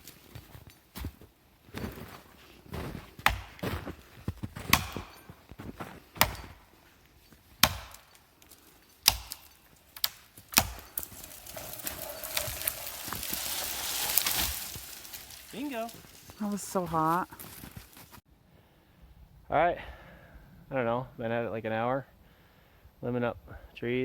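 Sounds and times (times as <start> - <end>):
axe chopping wood: 3.2 - 3.8, 4.6 - 5.3, 6.2 - 6.7, 7.5 - 8.2, 9.0 - 16.1.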